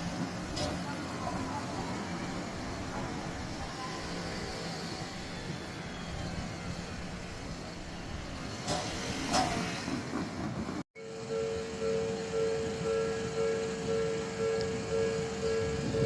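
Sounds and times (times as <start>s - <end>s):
level crossing warning signal: 0.0s - 8.4s, 11.0s - 16.0s
train wheels rumbling on rail: 0.0s - 16.0s
sharp rail clacks: 8.6s - 10.8s.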